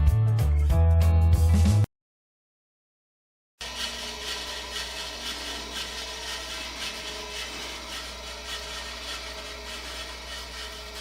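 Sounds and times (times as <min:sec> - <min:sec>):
hand rubbing strokes: 0:03.7 - 0:11.0.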